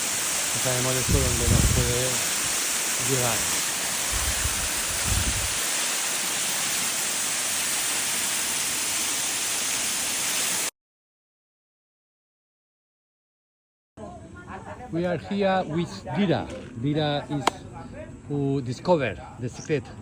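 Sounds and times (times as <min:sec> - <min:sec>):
waterfall rushing: 0:00.0 - 0:10.7
low microphone rumble: 0:01.0 - 0:02.6.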